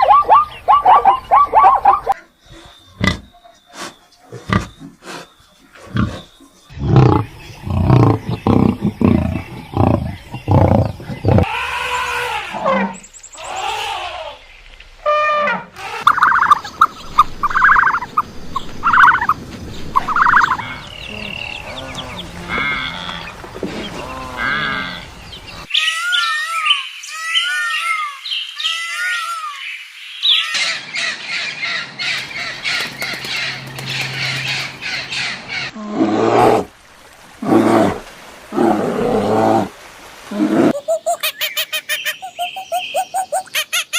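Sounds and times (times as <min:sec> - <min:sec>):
higher farm animal calls: 0:15.1 - 0:18.2, 0:20.0 - 0:25.0
bird chirps: 0:16.1 - 0:22.3, 0:40.8 - 0:43.9.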